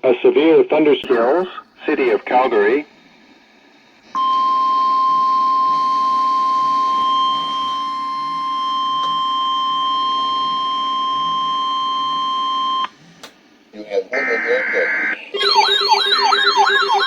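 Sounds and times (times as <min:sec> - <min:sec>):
steady electronic alarm tone: 0:04.2 - 0:13.0, 0:14.2 - 0:17.0.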